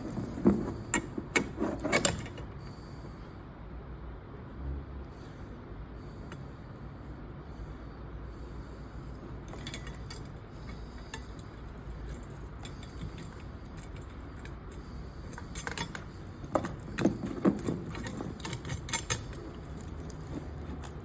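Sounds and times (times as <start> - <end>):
metal parts clinking and knocking: 0.0 - 2.6, 9.4 - 21.0.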